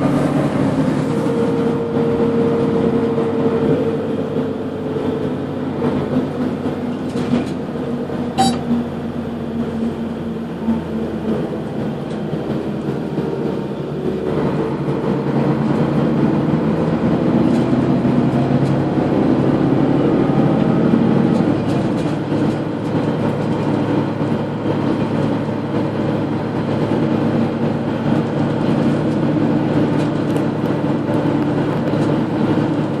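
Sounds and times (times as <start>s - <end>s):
bus engine droning: 0.0s - 33.0s.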